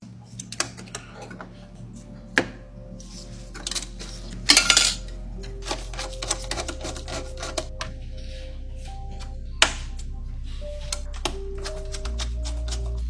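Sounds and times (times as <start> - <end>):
background music with low bass: 0.0 - 13.0
hard parts clicking and clattering: 3.5 - 7.8.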